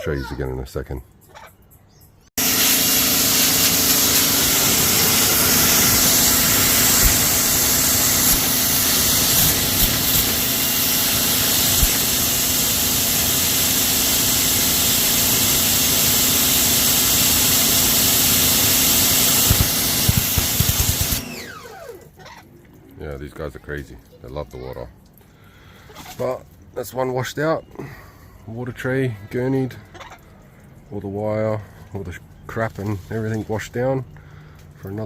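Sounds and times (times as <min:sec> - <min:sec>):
pressure washer running: 0:02.4 - 0:22.0.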